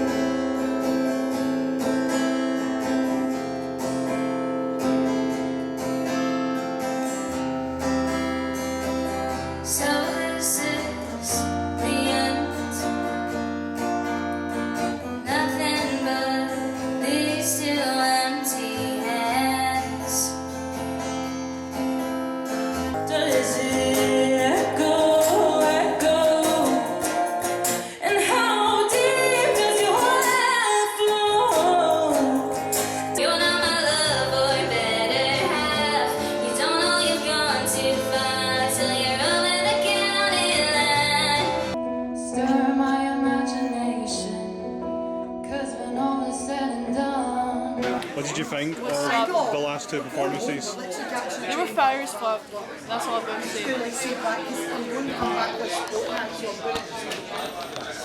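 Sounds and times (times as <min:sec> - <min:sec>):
acoustic guitar strumming: 0:00.0 - 0:50.8
people singing: 0:23.0 - 0:41.8.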